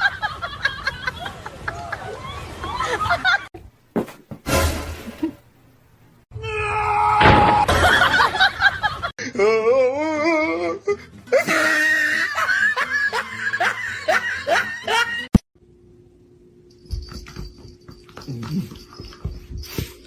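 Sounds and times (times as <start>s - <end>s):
people laughing: 0.0s - 3.5s, 7.7s - 9.1s, 10.9s - 15.3s.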